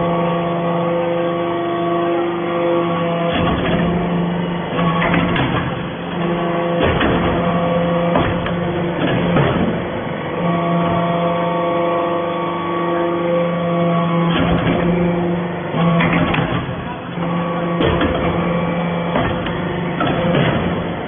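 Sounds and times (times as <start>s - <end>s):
steady machine hum: 0.0s - 21.0s
press clunks and knocks: 2.4s - 11.3s, 13.8s - 21.0s.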